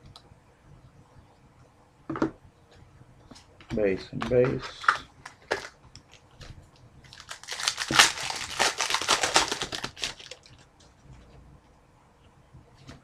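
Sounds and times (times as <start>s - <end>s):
plastic wrapper crinkling and tearing: 7.0s - 10.7s.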